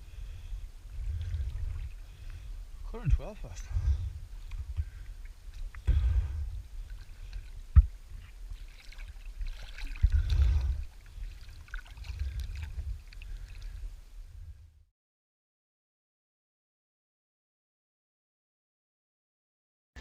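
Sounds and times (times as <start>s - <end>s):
wind on microphone: 0.0s - 8.6s, 9.2s - 14.9s.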